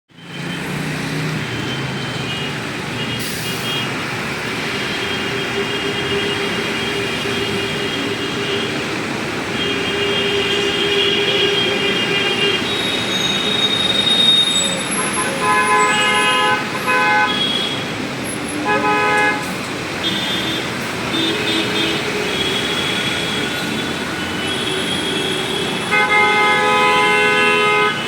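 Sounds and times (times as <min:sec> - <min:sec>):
traffic engine rumble: 0:00.1 - 0:28.0
vehicle horns honking: 0:09.5 - 0:17.9, 0:18.6 - 0:28.0.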